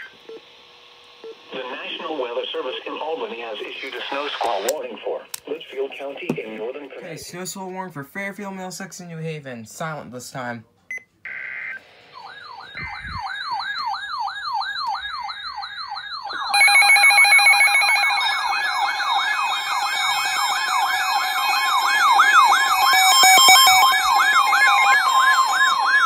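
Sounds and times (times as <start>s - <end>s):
electronic alarm beeping: 10.9s - 26.0s
yelping emergency siren: 11.3s - 26.0s.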